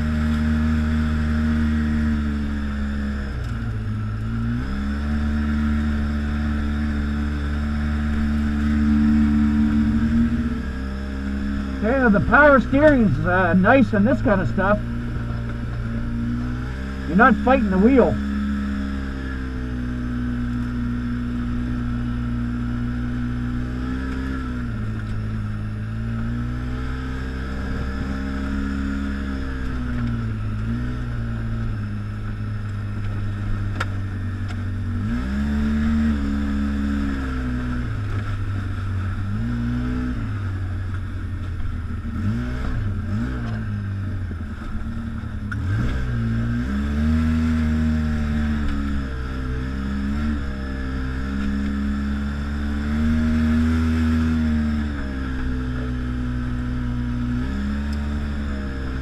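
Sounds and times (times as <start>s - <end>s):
atv engine revving: 0.0s - 59.0s.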